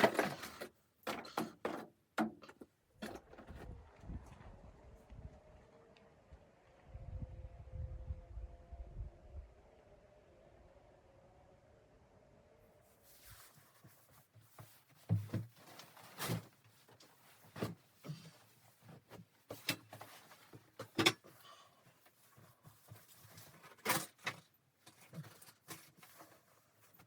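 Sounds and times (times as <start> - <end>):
objects being handled: 13.0 - 27.0.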